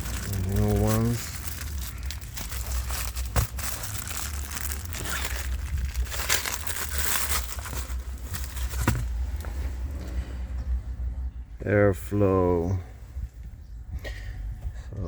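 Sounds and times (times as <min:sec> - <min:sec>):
packaging crinkling and rustling: 0:00.0 - 0:09.4.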